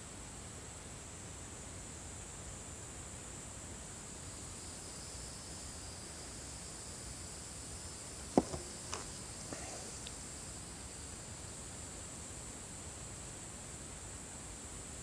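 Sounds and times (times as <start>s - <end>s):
faint steady hiss: 0.0s - 15.0s
sharp knock: 8.4s - 9.1s.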